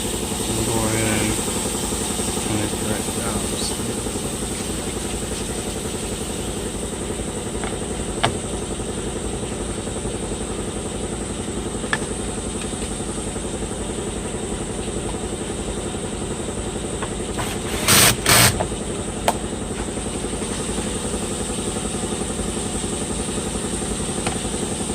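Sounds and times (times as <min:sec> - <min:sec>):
engine idling: 0:00.0 - 0:24.9
short noisy bursts: 0:17.3 - 0:18.7.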